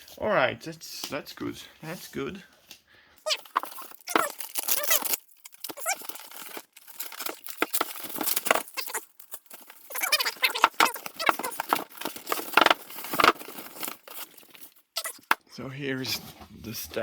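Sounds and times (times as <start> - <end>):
packaging rustling: 2.6 - 15.4
short squeaks: 3.2 - 15.3
scraping and knocking: 3.3 - 15.4.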